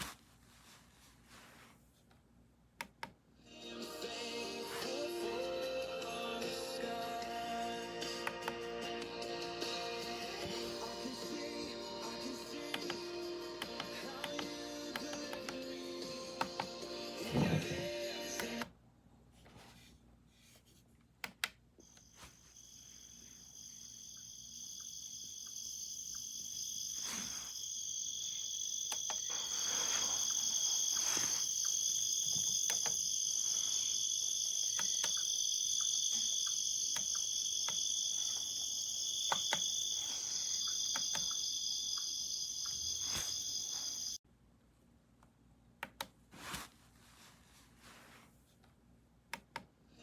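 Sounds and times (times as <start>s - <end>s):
crickets chirring: 21.8s - 44.2s.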